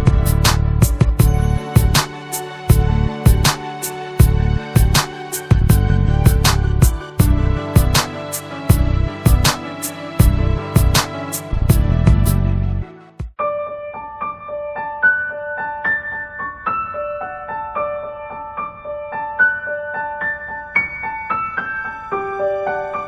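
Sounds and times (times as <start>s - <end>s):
track with sharp beats: 0.0s - 13.4s
soft keyboard melody: 0.0s - 23.0s.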